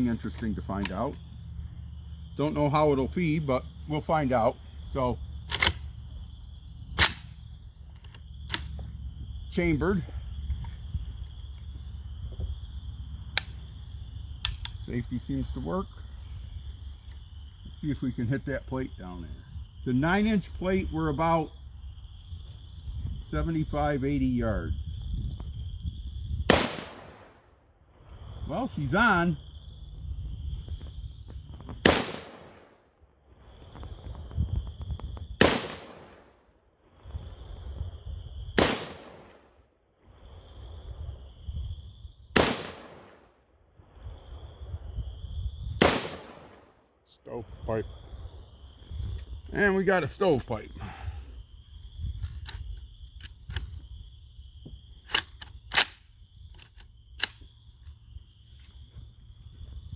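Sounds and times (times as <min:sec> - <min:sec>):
insects trilling: 0:00.0 - 0:32.7, 0:33.3 - 0:36.2, 0:36.9 - 0:59.9
rifle action clacking: 0:00.4 - 0:01.2, 0:05.5 - 0:05.9, 0:07.0 - 0:08.8, 0:55.1 - 0:56.0
rifle shots: 0:05.4 - 0:06.0, 0:06.9 - 0:07.4, 0:26.5 - 0:27.4, 0:31.8 - 0:32.7, 0:35.4 - 0:36.3, 0:38.6 - 0:39.4, 0:42.4 - 0:43.2, 0:45.8 - 0:46.7.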